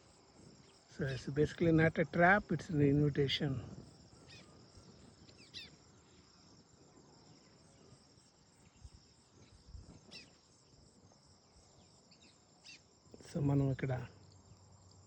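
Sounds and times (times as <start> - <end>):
crickets chirring: 0.0 - 15.0
bird high chirps: 4.2 - 6.2.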